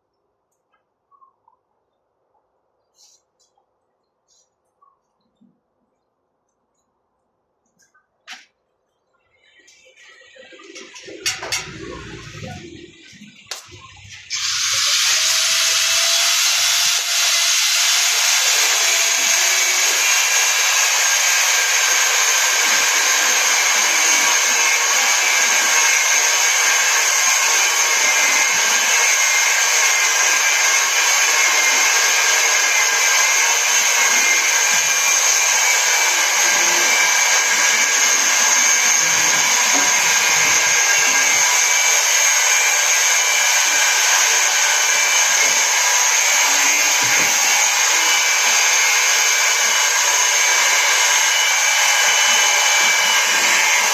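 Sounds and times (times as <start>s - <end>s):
high-speed electric motor whine: 14.3s - 53.9s.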